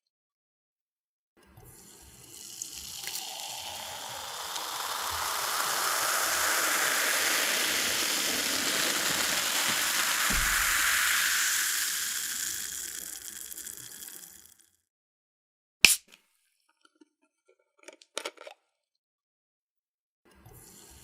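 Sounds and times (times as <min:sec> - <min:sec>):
liquid pouring with fizzing: 0:01.8 - 0:14.6.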